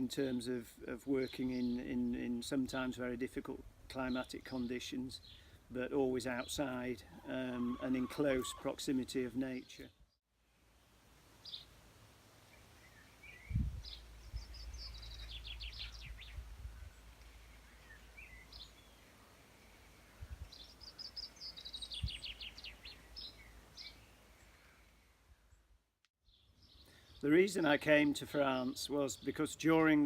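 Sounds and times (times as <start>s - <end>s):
birds singing: 0.0s - 3.1s, 11.4s - 11.7s, 12.5s - 30.0s.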